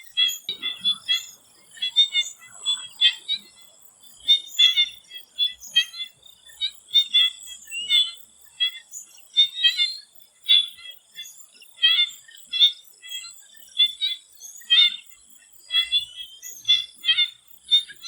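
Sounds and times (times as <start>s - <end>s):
frogs calling: 0.0s - 18.0s
high-pitched insect drone: 0.5s - 5.2s.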